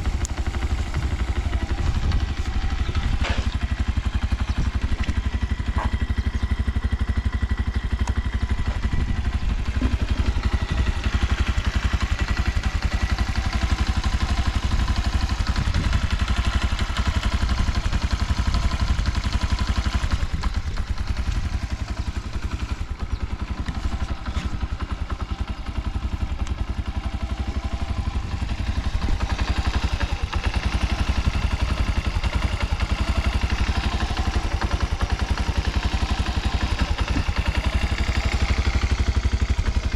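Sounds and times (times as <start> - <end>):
scooter engine running: 0.0 - 39.9.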